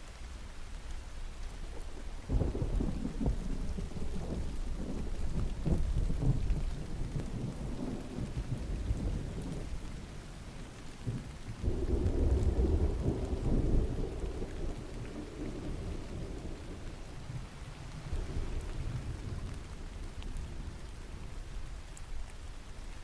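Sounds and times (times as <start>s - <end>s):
steady rain: 0.0s - 23.0s
thunder rumbling: 1.7s - 10.3s, 11.0s - 22.0s.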